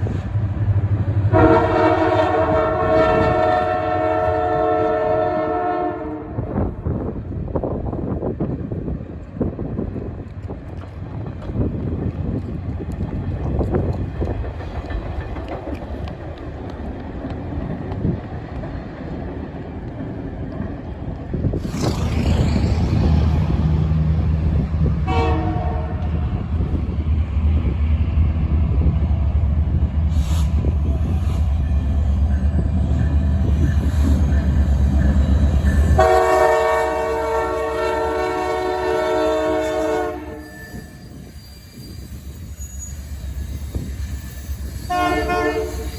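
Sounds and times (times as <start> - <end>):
train horn blasts: 1.3 - 6.6, 25.0 - 26.3, 35.6 - 41.0, 44.9 - 45.9
locomotive engine rumble: 6.7 - 45.9.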